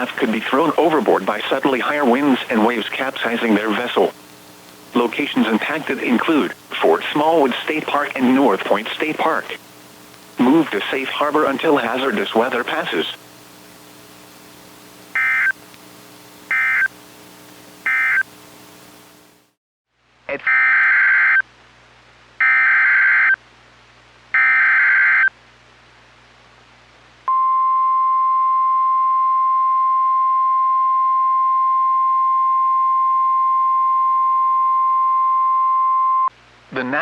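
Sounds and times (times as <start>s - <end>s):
data tone bursts: 15.1s - 15.6s, 16.5s - 16.9s, 17.8s - 18.3s
steady warning alarm tone: 15.2s - 15.6s, 16.5s - 16.9s, 17.9s - 18.3s.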